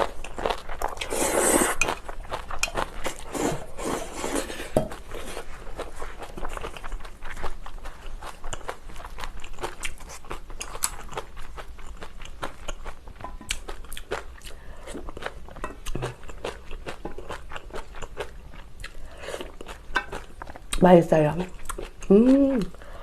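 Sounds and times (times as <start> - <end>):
chewing and crunching: 0.0 - 3.8, 4.5 - 20.8, 21.4 - 23.0
noodle slurp: 1.0 - 2.0.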